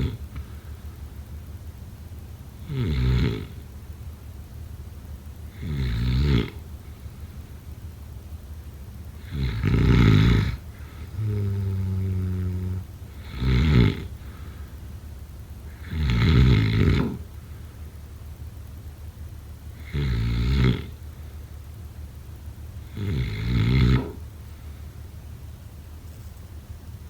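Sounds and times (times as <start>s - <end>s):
loud rasping snore: 0.0s - 0.4s, 2.6s - 3.6s, 5.5s - 6.6s, 9.2s - 14.3s, 15.7s - 17.3s, 19.8s - 21.0s, 22.9s - 24.2s
steady low tone: 0.0s - 16.5s.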